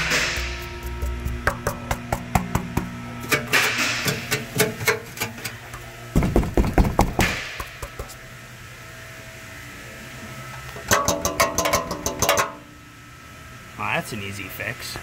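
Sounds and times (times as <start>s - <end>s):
metal heat shield rattling: 0.0s - 7.3s.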